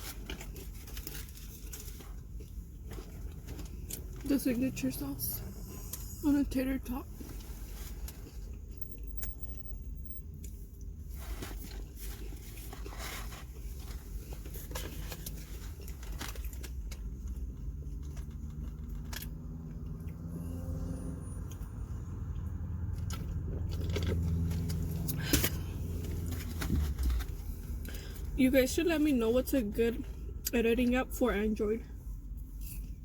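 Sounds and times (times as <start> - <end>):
low car engine hum: 0.0 - 33.0
deep engine drone: 13.1 - 28.4.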